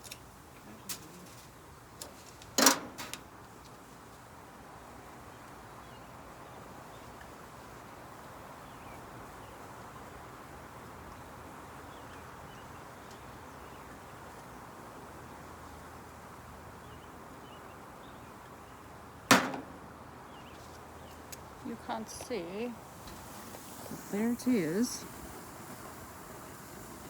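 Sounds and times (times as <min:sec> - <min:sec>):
faint outdoor background hiss: 0:00.0 - 0:27.0
loud clack: 0:19.3 - 0:19.9.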